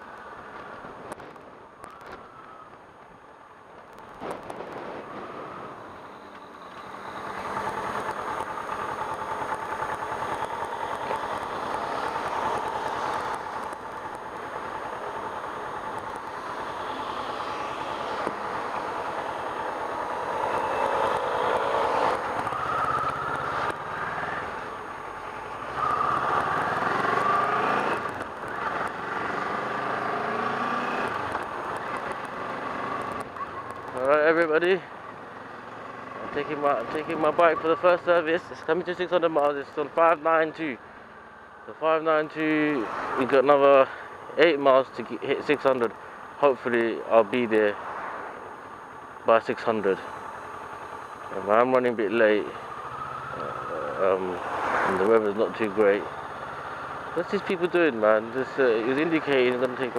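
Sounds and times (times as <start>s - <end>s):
motorcycle engine running: 6.1s - 33.9s.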